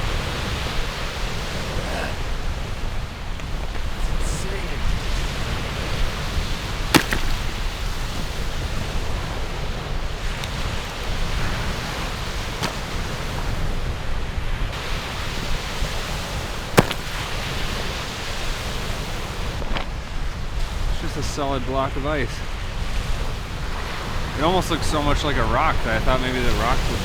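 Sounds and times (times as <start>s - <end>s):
waves washing on shore: 0.0s - 20.9s
wind buffeting microphone: 0.0s - 27.0s
sharp knocks: 6.9s - 7.6s, 16.8s - 17.2s.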